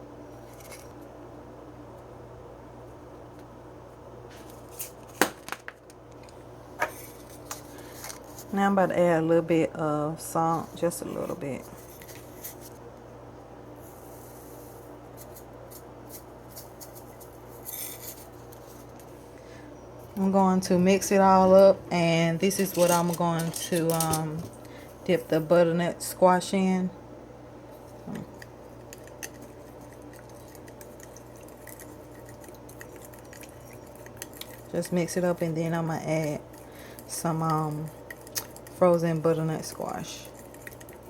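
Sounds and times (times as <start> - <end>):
low steady hum: 0.0 - 41.0
spoon stirring liquid in bowl: 28.2 - 41.0.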